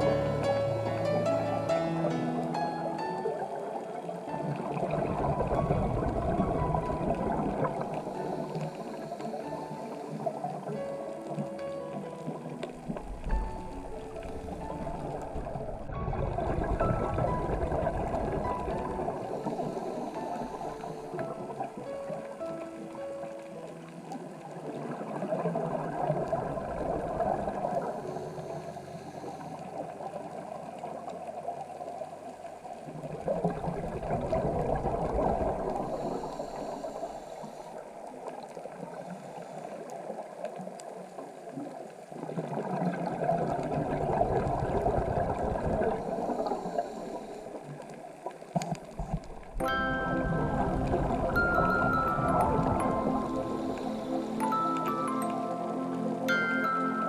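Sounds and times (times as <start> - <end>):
underwater regulator bubbling: 48.5 - 54.6.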